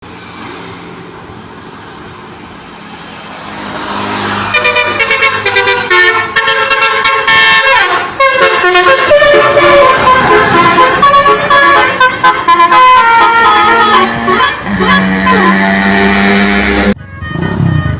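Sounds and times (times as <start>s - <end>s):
vehicle approaching: 0.0s - 17.9s
multi-tone musical horn tune: 4.5s - 17.9s.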